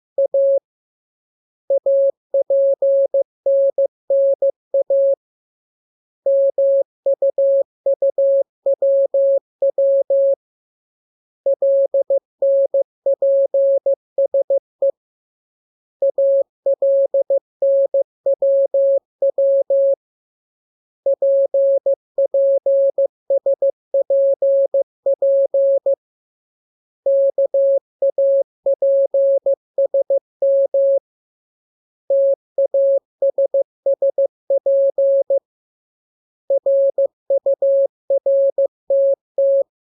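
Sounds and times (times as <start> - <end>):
morse code beeps: 27.1 - 31.0, 32.1 - 35.4, 36.6 - 39.7.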